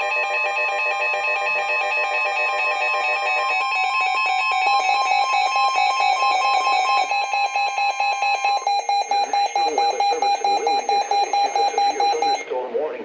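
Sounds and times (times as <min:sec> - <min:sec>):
alarm beeping rapidly: 0:00.0 - 0:12.5
steady high alert tone: 0:00.0 - 0:12.5
broadcast voice: 0:08.3 - 0:13.0.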